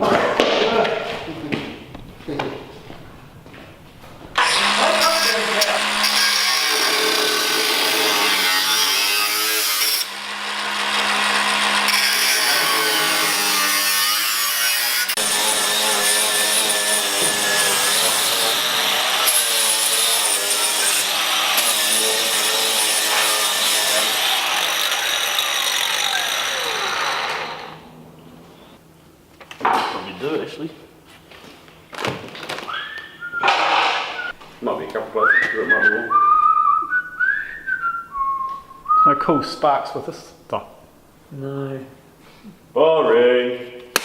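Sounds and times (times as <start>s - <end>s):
power saw cutting sheet metal: 4.4s - 27.8s.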